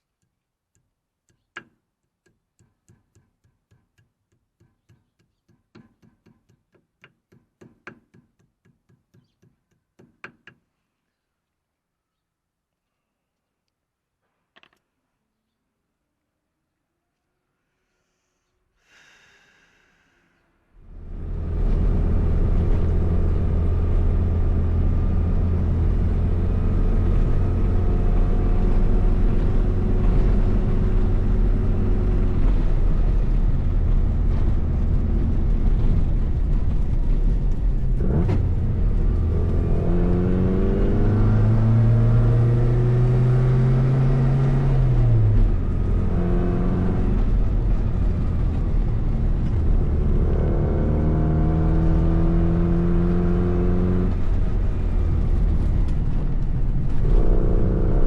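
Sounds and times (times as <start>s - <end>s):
car engine droning: 20.8s - 58.0s.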